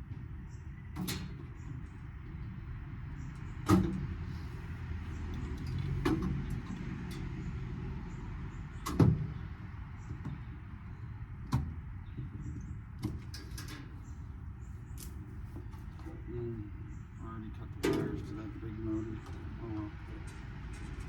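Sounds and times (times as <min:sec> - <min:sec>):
metal knocks and clanks: 0:17.7 - 0:21.0.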